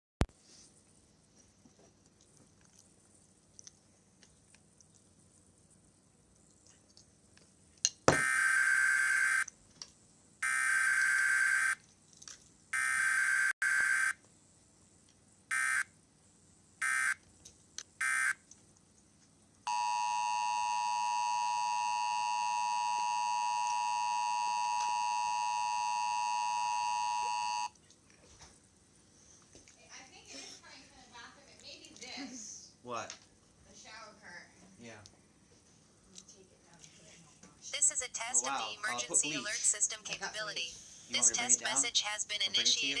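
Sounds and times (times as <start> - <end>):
rasping electronic buzz: 8.1 - 9.4, 12.8 - 14.2, 15.5 - 15.8, 16.8 - 17.2, 19.7 - 27.7
two-tone attention signal: 19.7 - 27.7.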